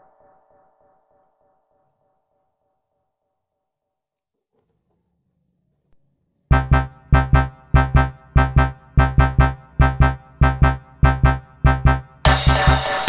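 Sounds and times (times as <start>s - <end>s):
electric piano chords: 6.5s - 13.0s.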